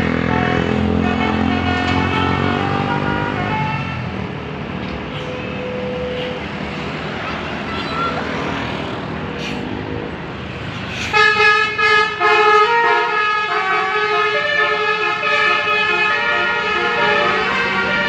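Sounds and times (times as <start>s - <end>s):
multi-tone horn melody: 0.0s - 4.1s, 11.1s - 18.0s.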